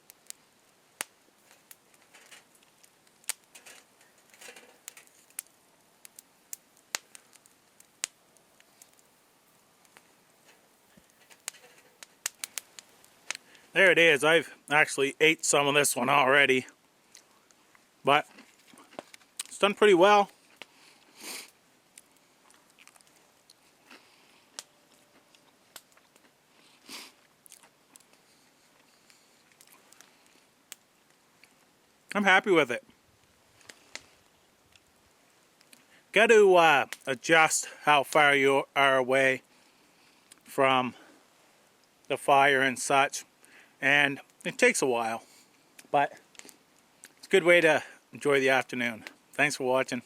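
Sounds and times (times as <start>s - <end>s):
campfire crackling and popping: 0.0s - 50.0s
person chewing: 25.0s - 27.7s.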